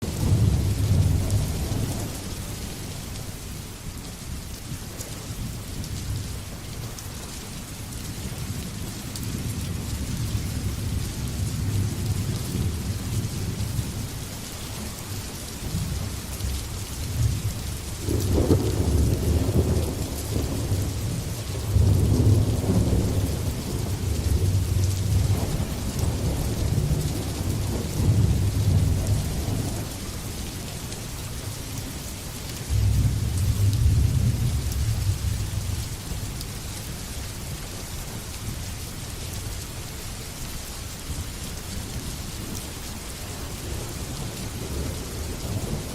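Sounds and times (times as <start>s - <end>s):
thunder rumbling: 0.0s - 2.5s, 17.1s - 30.0s, 32.6s - 36.3s, 43.6s - 45.9s
steady rain hissing: 0.0s - 45.9s.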